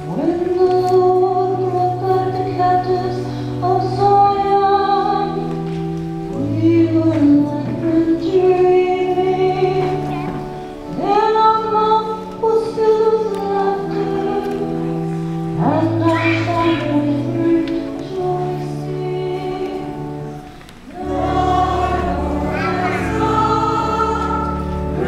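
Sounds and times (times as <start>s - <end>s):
choir singing: 15.6s - 25.0s.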